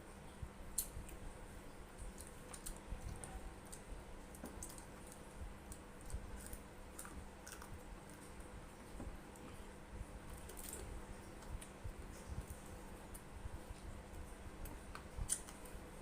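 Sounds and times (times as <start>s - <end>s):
chewing and mouth noises: 2.0s - 8.4s.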